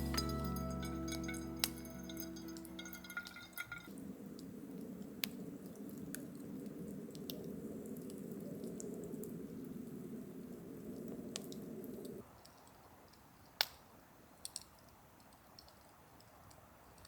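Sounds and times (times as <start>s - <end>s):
background music: 0.0s - 3.6s
light clicks and clinks: 0.0s - 3.9s
faint steady hiss: 0.0s - 17.0s.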